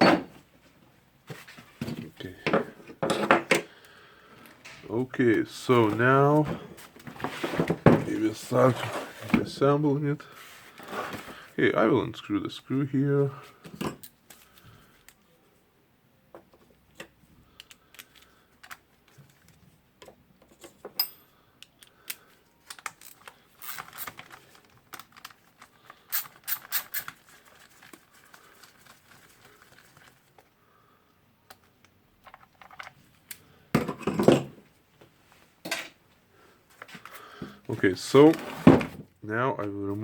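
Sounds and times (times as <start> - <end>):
metal parts clicking and clattering: 22.6 - 28.0.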